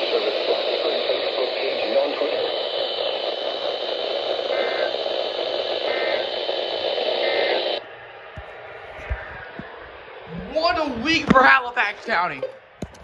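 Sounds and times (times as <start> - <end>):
radio static hiss: 0.0 - 13.0
digital data bursts: 0.7 - 7.8.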